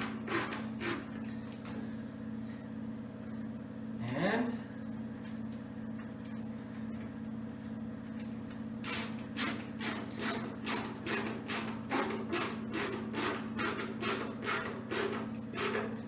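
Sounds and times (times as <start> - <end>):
steady low hum: 0.0 - 13.6.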